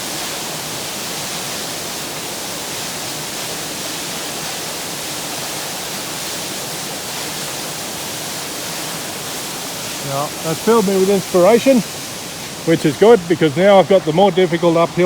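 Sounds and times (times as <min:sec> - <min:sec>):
waterfall rushing onto rocks: 0:00.0 - 0:15.0.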